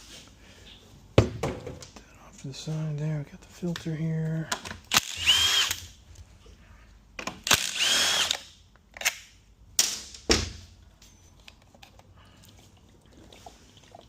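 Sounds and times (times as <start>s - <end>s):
power tool whirring: 4.9s - 5.9s, 7.4s - 8.5s.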